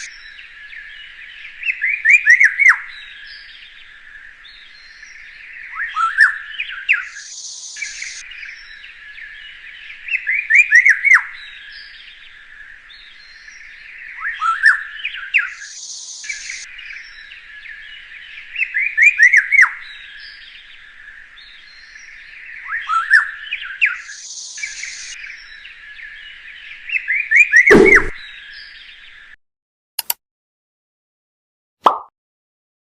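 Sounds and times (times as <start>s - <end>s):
songbird singing: 0.0s - 29.4s
brief loud burst: 27.7s - 28.1s.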